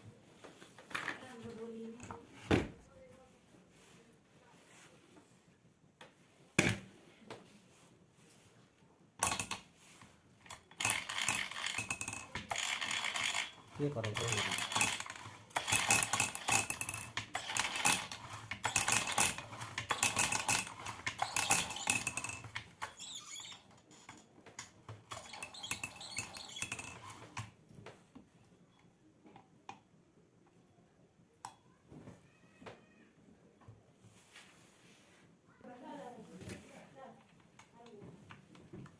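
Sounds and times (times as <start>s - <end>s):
small metal tools clattering: 9.2s - 9.7s, 10.4s - 27.5s.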